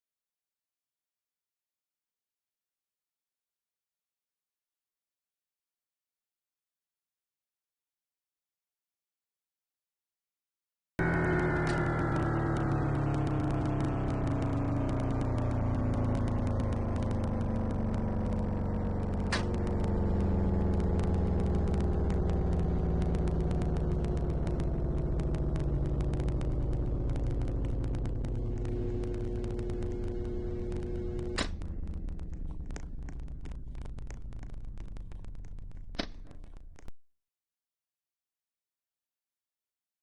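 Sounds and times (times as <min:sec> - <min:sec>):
warning siren winding down: 0:11.0 - 0:36.6
sharp clicks: 0:11.6 - 0:37.0.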